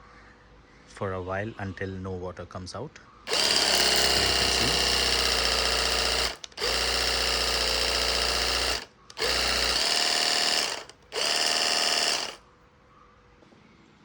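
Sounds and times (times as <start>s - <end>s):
pressure washer motor whining: 3.3s - 12.4s.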